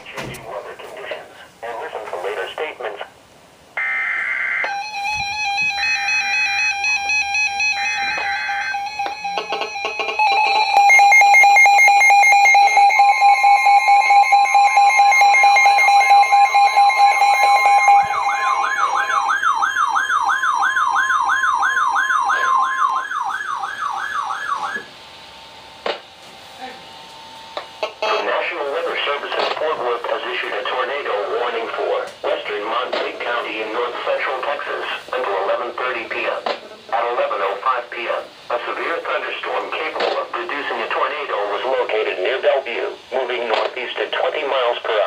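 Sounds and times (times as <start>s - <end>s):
warbling alarm tone: 3.8s - 25.8s
steady attention tone: 3.8s - 31.8s
pulsing electronic beeps: 5.9s - 19.4s
data screech bursts: 7.9s - 19.4s.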